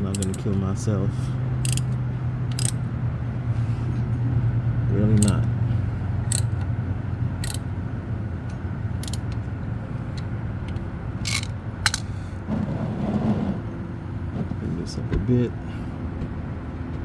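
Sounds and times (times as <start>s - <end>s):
tools clicking and clinking: 0.0s - 0.6s, 1.6s - 2.8s, 5.1s - 5.6s, 6.3s - 6.7s, 7.4s - 7.7s, 8.5s - 9.5s, 10.2s - 12.1s
steady low rumble: 0.0s - 17.0s.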